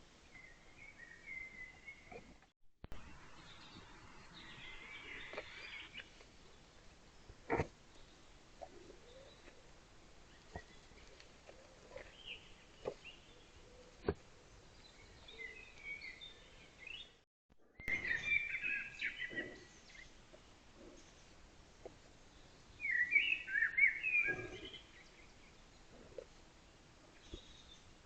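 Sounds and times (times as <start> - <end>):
outdoor background noise: 0.0 - 28.0
small birds chirping: 3.0 - 9.7, 10.3 - 17.2, 17.8 - 28.0.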